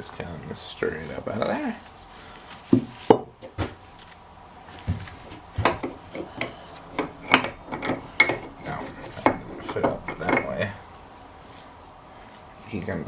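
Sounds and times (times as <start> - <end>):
steel parts clinking and knocking: 5.6 - 10.8.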